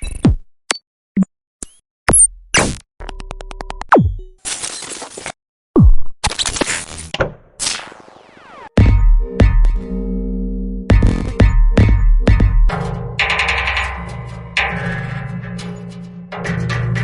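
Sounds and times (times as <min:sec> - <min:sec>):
synthesized falling-pitch drops: 0:07.6 - 0:08.9.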